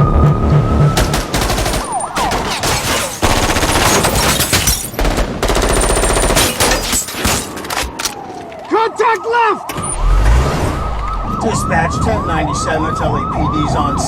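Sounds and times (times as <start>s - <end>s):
police siren: 0.0s - 5.0s, 5.6s - 14.0s.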